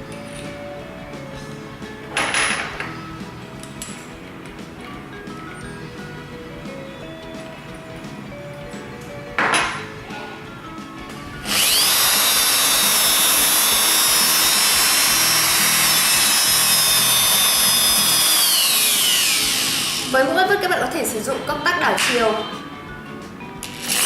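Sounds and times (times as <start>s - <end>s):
electric drill whining: 11.4s - 20.3s, 23.6s - 24.0s.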